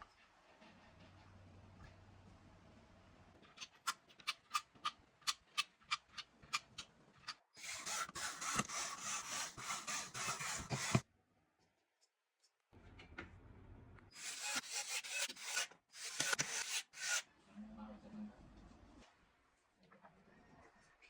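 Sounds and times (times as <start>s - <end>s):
rough scraping rub: 7.6s - 11.0s.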